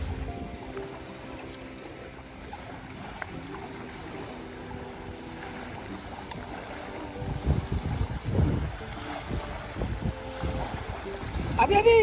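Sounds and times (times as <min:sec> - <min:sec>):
water at the shore: 0:00.0 - 0:12.0
wind: 0:00.0 - 0:12.0.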